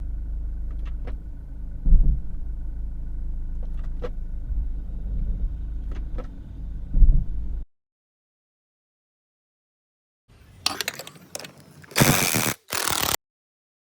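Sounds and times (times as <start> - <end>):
heavy low thump: 0.0 - 3.2, 6.8 - 7.6
low drivetrain rumble: 0.0 - 7.7.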